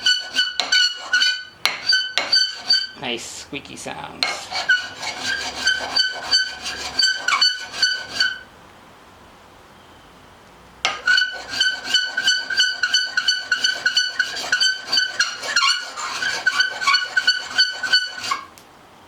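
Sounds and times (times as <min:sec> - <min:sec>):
blade scraping on sharpening stone: 0:00.0 - 0:03.0, 0:04.3 - 0:08.4, 0:11.0 - 0:18.5.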